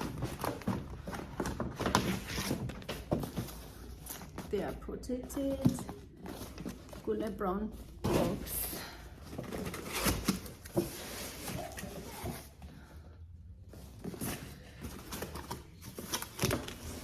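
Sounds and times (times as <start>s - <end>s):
cardboard box rustling and tapping: 0.0s - 7.0s.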